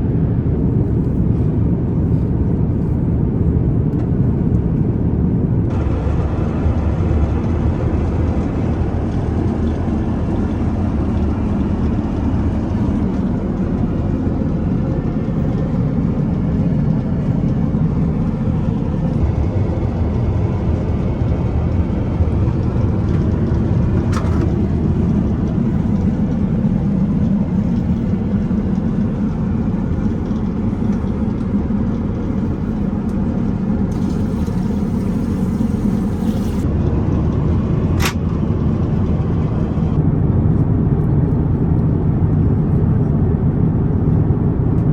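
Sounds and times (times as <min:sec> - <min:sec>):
airplane cabin rumble: 0:00.0 - 0:44.9.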